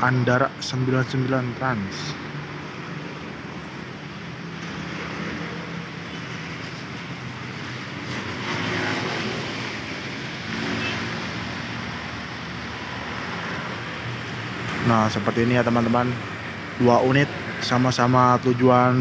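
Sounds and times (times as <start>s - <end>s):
street noise: 0.0s - 19.0s.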